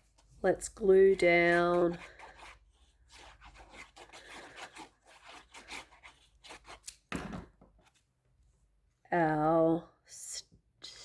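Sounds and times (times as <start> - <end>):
thump on a desk: 7.1 - 7.7.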